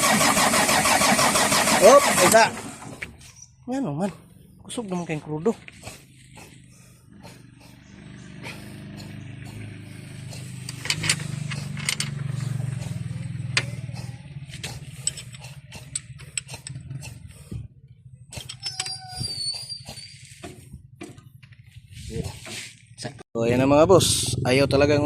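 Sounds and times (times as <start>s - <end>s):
diesel engine cranking by starter: 0.0s - 3.2s, 7.1s - 21.2s.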